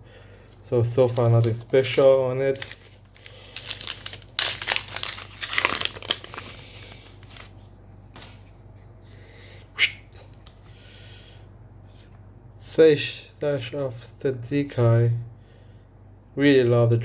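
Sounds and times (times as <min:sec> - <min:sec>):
foil wrapper crinkling and tearing: 0:00.9 - 0:08.4.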